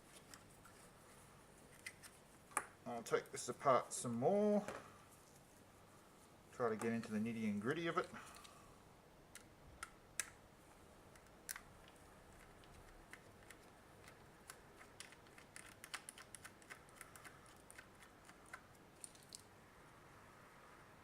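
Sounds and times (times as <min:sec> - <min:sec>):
small plastic parts clicking: 0:11.1 - 0:19.5.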